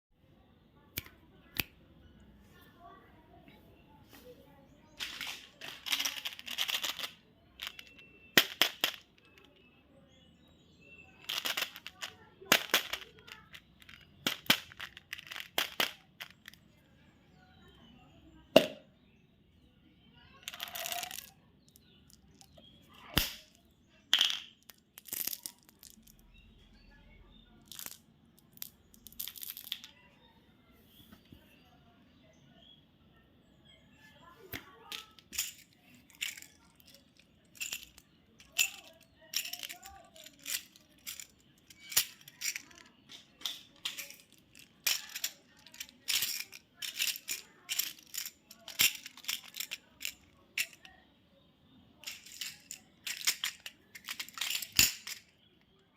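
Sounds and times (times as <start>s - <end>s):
candy wrappers crinkling: 5.0s - 9.0s.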